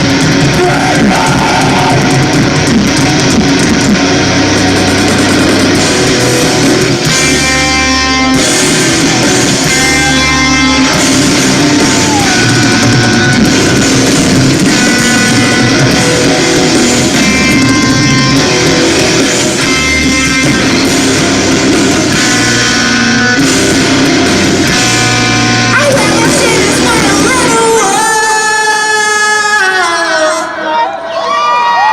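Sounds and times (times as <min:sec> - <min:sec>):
bass guitar: 0:00.0 - 0:30.6
drums: 0:00.0 - 0:31.9
loud electric guitars: 0:00.0 - 0:31.9
person singing: 0:00.5 - 0:02.5, 0:25.7 - 0:30.9.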